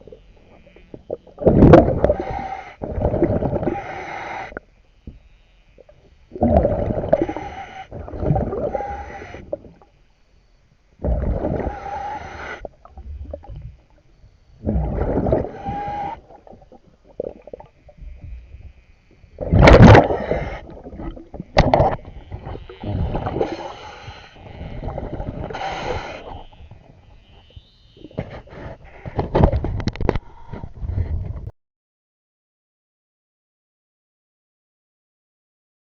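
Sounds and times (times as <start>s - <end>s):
diver exhaling bubbles underwater: 1.1s - 4.6s, 6.3s - 9.8s, 11.0s - 13.7s, 14.6s - 17.8s, 19.4s - 26.4s.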